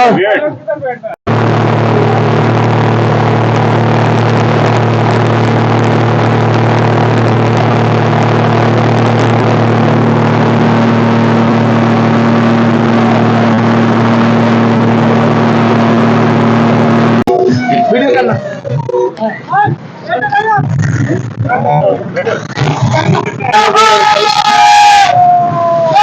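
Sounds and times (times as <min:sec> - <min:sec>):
motorboat engine running: 0:01.3 - 0:17.6.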